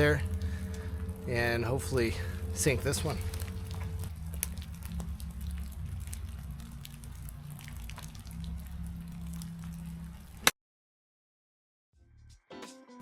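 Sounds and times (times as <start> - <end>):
steady low rumble: 0.0 - 10.4
rain falling: 0.0 - 10.5
raindrops ticking: 0.0 - 10.5.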